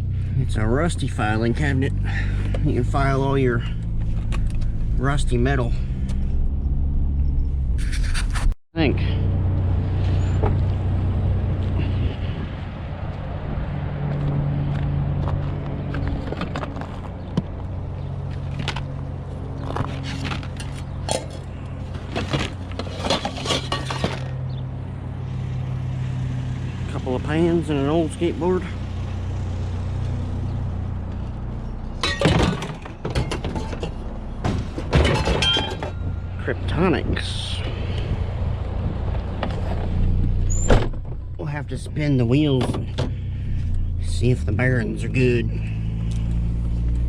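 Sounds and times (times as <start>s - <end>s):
pickup truck engine: 0.0s - 8.2s, 8.8s - 47.0s
road noise: 0.0s - 47.0s
metal pans clattering: 22.8s - 24.3s, 32.0s - 34.0s, 34.9s - 36.0s.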